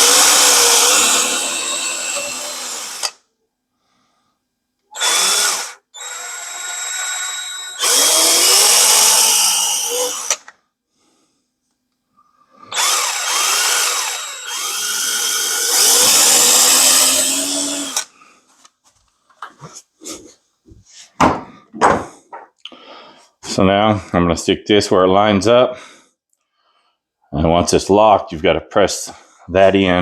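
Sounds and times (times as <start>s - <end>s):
power drill running: 0.0s - 3.2s, 5.0s - 10.5s, 12.7s - 18.1s.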